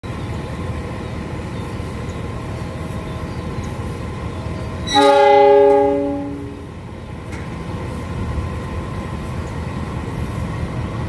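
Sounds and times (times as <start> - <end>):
diesel locomotive rumbling: 0.0 - 11.0
locomotive air horn chord: 4.8 - 6.7.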